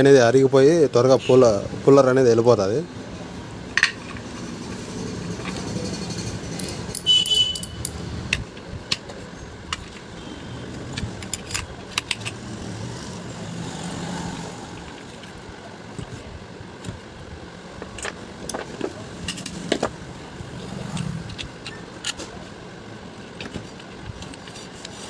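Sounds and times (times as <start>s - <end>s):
metal clicks and clinks: 3.8s - 10.1s, 10.9s - 12.4s.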